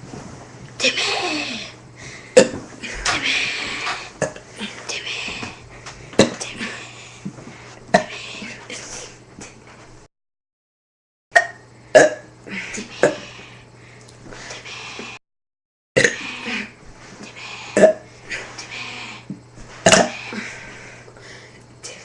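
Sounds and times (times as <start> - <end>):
boy burping: 16.0 - 16.6, 19.8 - 20.3.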